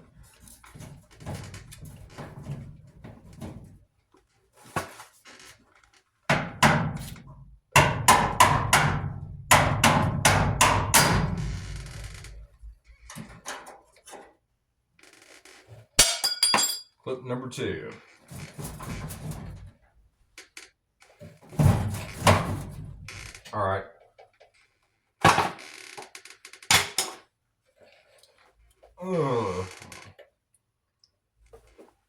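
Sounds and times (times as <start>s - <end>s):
tools knocking on sheet metal: 7.8s - 11.4s.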